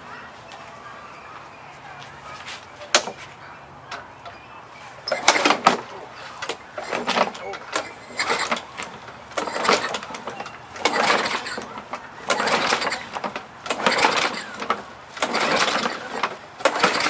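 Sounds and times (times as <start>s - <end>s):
mower recoil rope pulls: 5.0s - 17.0s.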